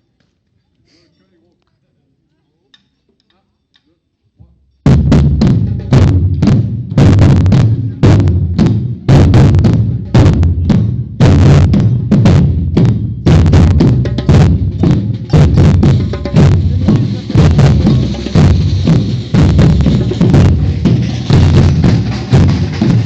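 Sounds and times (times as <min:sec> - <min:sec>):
snare drums: 0:04.8 - 0:23.0
deep bass drums: 0:04.9 - 0:23.0.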